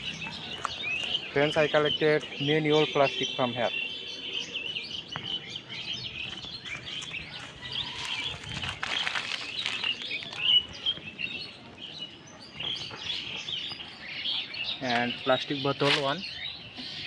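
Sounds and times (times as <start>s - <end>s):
small birds chirping: 0.0s - 17.0s
rustling crackle: 6.3s - 10.7s.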